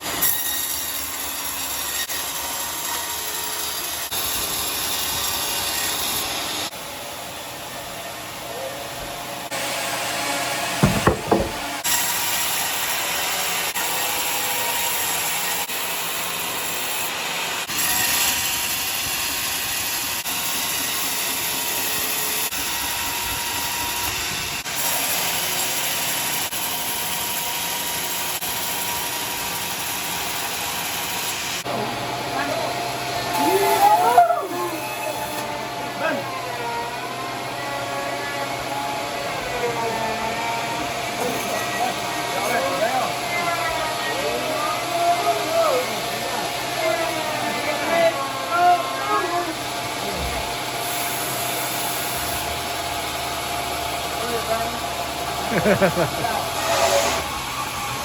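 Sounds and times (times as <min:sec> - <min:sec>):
sawmill saw cutting log: 0:00.0 - 0:58.0
loud knock: 0:10.8 - 0:11.8.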